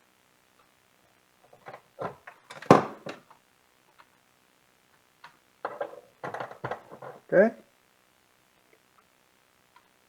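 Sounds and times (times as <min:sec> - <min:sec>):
handling clicks and knocks: 0:05.6 - 0:07.2.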